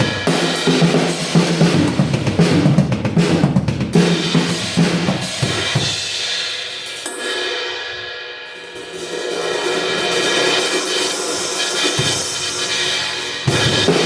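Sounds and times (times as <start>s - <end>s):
drum kit playing: 0.0s - 14.0s
crash cymbal ringing: 6.2s - 13.9s.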